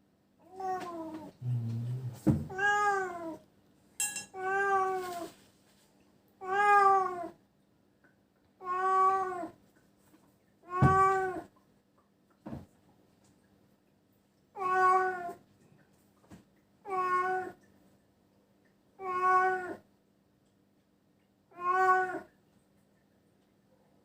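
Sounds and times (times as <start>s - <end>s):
cat meowing: 19.0s - 19.8s, 21.5s - 22.3s.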